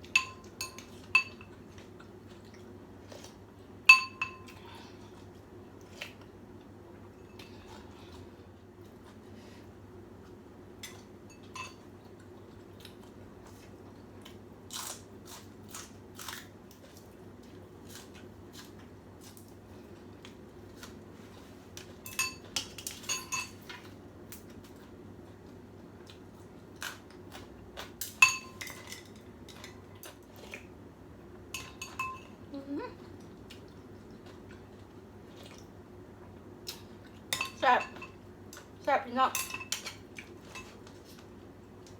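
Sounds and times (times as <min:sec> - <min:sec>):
utensils clinking against bowl: 0:00.0 - 0:01.6, 0:03.9 - 0:04.6, 0:10.8 - 0:11.9, 0:21.8 - 0:23.9, 0:28.2 - 0:29.8, 0:31.5 - 0:32.4, 0:37.3 - 0:38.2, 0:39.2 - 0:41.0.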